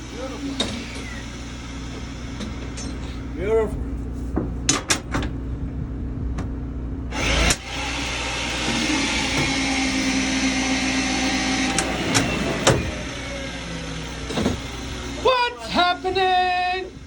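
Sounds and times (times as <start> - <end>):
machine humming: 7.1 - 17.0
machine starting knock: 11.5 - 13.2.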